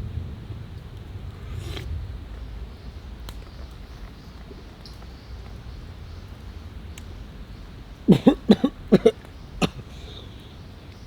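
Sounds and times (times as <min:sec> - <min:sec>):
low steady background noise: 0:00.0 - 0:11.0
man coughing: 0:08.1 - 0:10.1.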